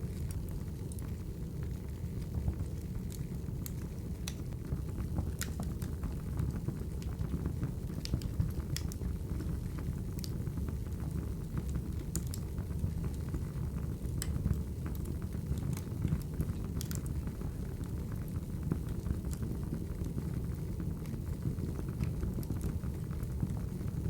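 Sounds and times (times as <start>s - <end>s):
fire pops and snaps: 0.0s - 23.7s
wood fire crackling: 0.0s - 24.0s.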